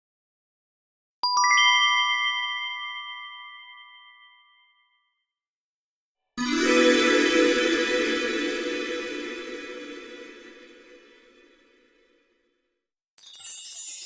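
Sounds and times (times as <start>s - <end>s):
dense shimmering sound: 6.5s - 11.4s
bell-like chime cascade: 13.2s - 14.0s.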